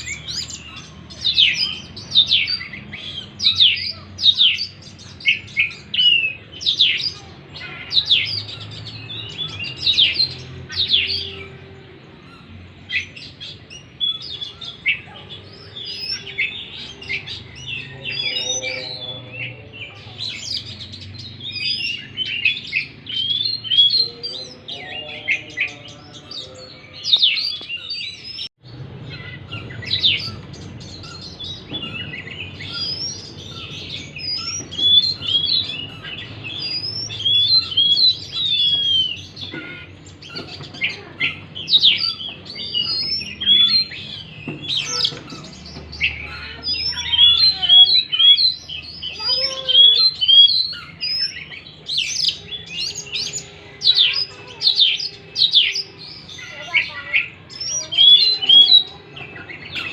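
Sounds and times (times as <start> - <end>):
bird singing whistles: 31.8 - 39.4, 46.0 - 55.9.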